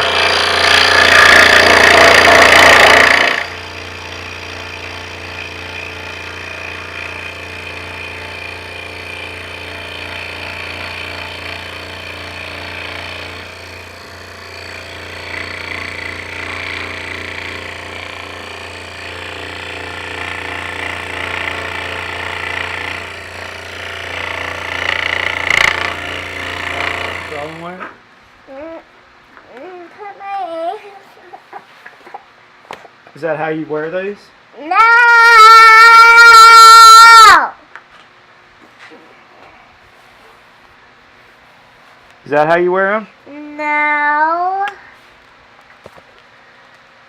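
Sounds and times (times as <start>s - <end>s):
scroll saw cutting wood: 0.0s - 28.0s, 35.6s - 37.4s.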